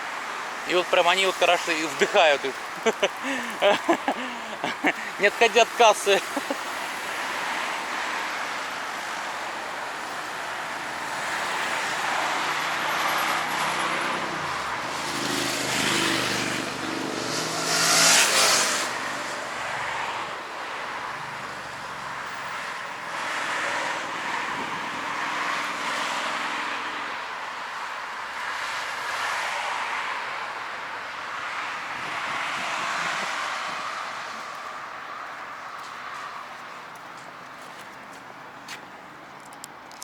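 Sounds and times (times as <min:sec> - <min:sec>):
cars driving past: 0:00.0 - 0:36.5
loud vehicle passing: 0:01.6 - 0:27.1, 0:31.3 - 0:34.8.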